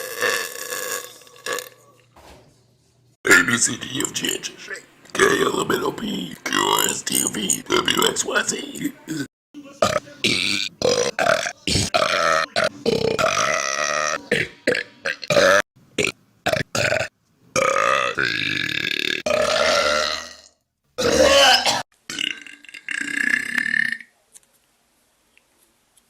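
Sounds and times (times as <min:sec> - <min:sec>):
person burping: 0:00.0 - 0:01.8, 0:08.8 - 0:24.1.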